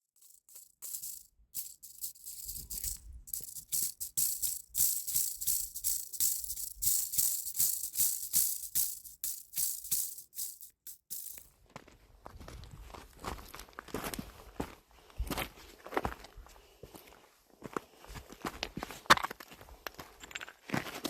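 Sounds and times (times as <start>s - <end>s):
dry shaker rattle: 0.0s - 11.5s.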